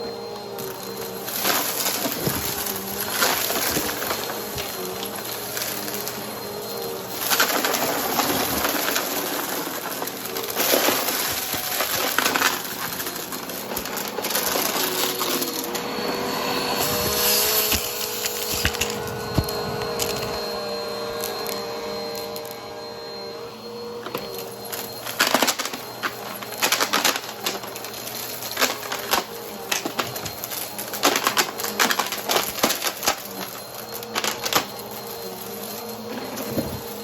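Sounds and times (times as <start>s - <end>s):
vacuum cleaner motor whine: 0.0s - 37.0s
debris crackling and crunching: 0.6s - 6.2s, 7.1s - 15.8s.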